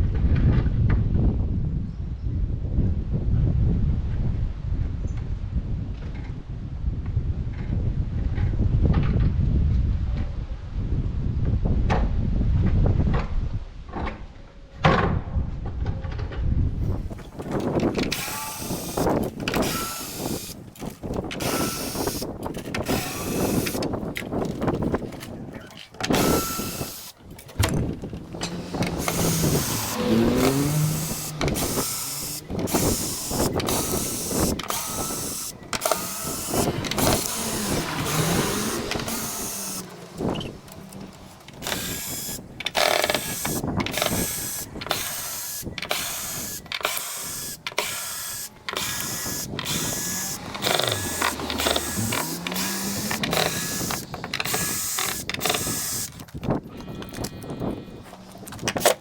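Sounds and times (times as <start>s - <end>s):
rising and falling whines: 26.2s - 56.1s.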